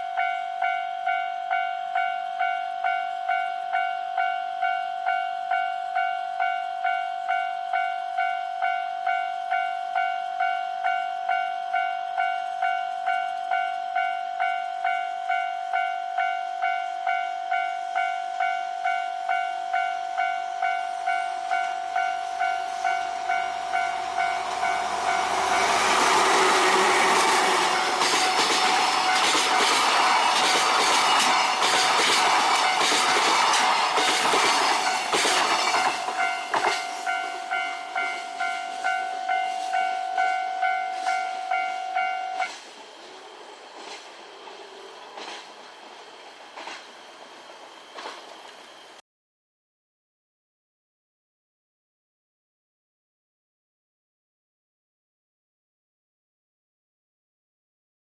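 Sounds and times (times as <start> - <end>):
level-crossing alarm dinging: 0.0 - 42.6
train passing: 5.5 - 49.0.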